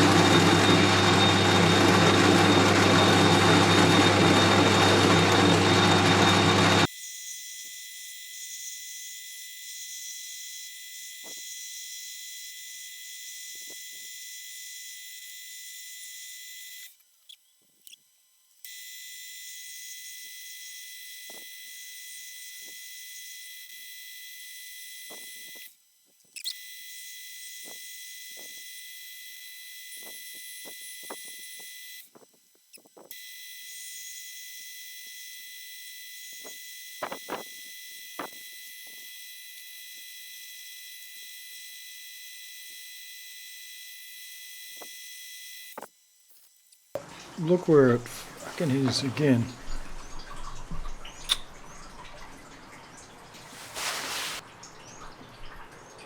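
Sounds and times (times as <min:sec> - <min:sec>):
power tool running: 0:00.0 - 0:06.9, 0:47.0 - 0:50.8.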